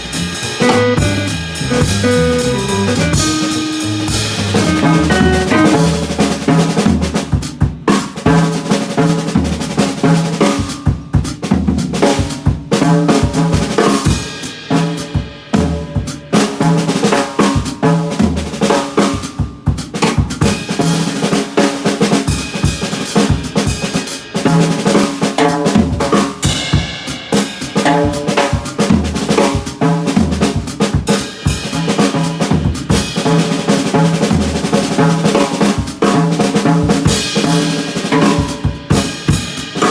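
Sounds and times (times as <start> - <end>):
band music: 0.0 - 6.6
kick and snare drum hits: 0.0 - 7.5.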